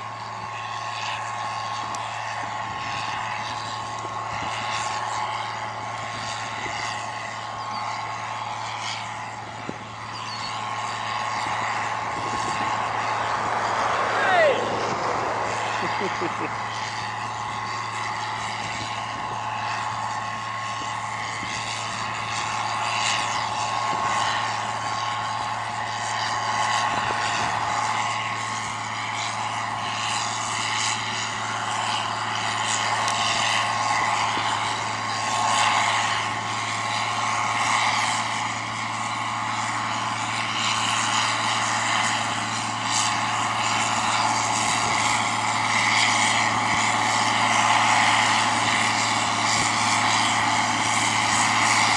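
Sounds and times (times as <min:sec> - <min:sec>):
tractor diesel engine running: 0:00.0 - 0:51.9
high whine: 0:09.0 - 0:25.7.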